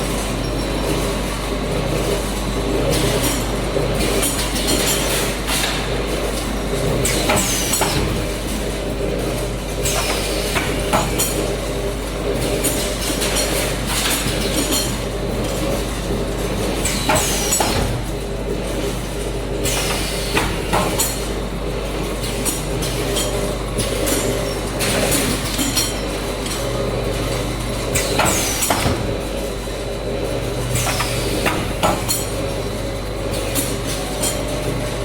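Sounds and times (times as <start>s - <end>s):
steady machine hum: 0.0s - 35.0s.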